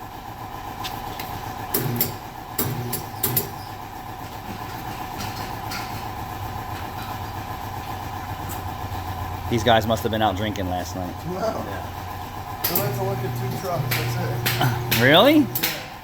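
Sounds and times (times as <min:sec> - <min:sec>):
tire changer clacks: 0:00.7 - 0:16.0
machine hum: 0:09.1 - 0:16.0.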